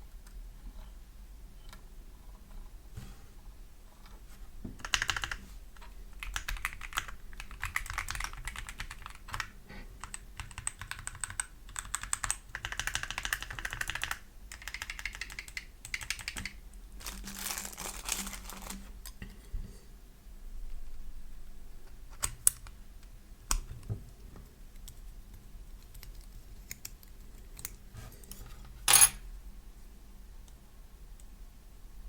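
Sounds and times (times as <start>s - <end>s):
mechanical keyboard typing: 4.8s - 5.4s, 6.2s - 16.6s.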